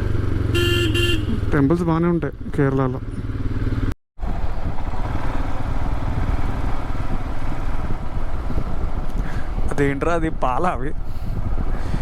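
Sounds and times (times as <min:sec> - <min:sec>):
motorcycle engine running: 0:00.0 - 0:09.7
wind rumble on microphone: 0:04.2 - 0:12.0.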